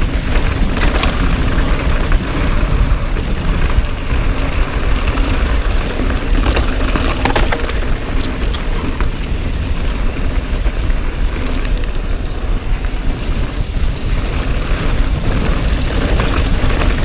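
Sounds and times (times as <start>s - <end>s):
tyres rolling over dirt: 0.0s - 11.4s, 12.1s - 17.0s
bike clicks and rattles: 0.0s - 17.0s
wind buffeting microphone: 0.0s - 17.0s
quick sharp ticks: 7.6s - 14.8s.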